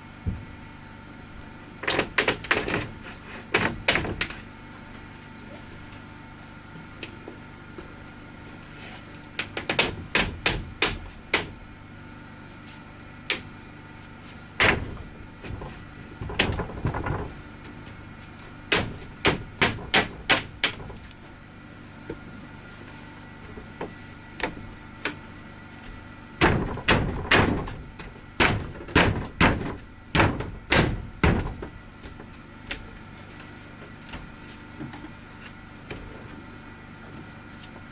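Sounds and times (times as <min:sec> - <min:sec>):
hammer striking wood: 0:18.7 - 0:21.1, 0:26.4 - 0:32.2.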